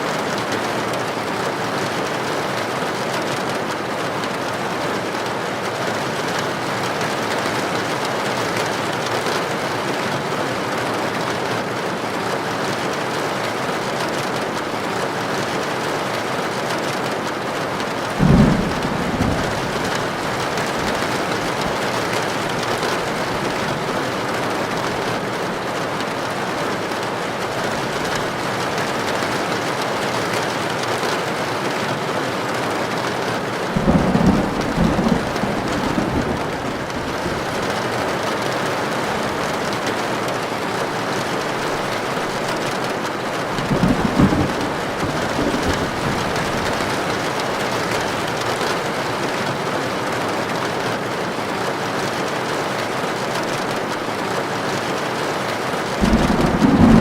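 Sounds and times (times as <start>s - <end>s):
heavy rain on a tin roof: 0.0s - 57.0s
thunder clap: 18.0s - 25.3s, 33.8s - 38.0s, 43.5s - 48.4s, 56.0s - 57.0s.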